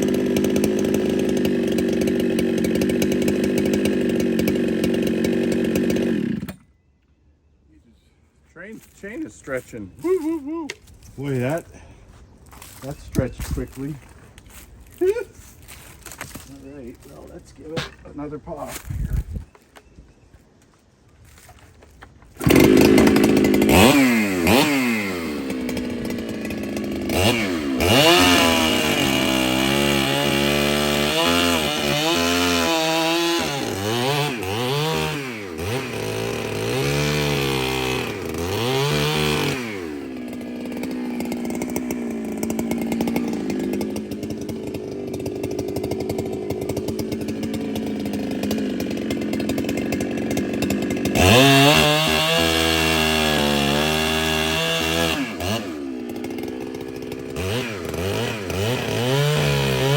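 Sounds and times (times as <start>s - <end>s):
chainsaw revving: 0.0s - 6.6s, 22.3s - 59.9s.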